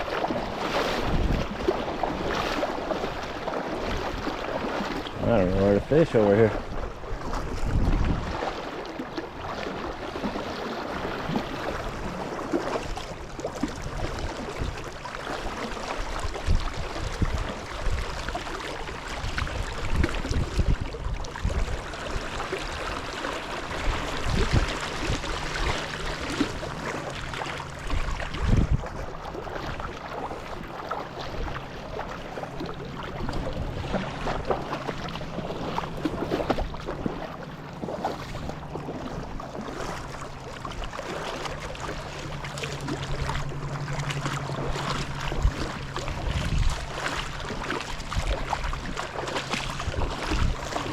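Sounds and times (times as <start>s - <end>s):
river current rushing: 21.7s - 29.5s.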